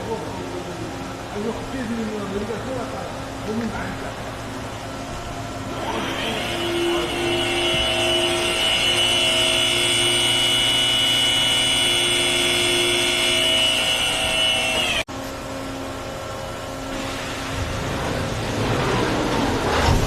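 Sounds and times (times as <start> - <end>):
machine hum: 0.0 - 20.0
high-pitched spindle whine: 5.7 - 15.1.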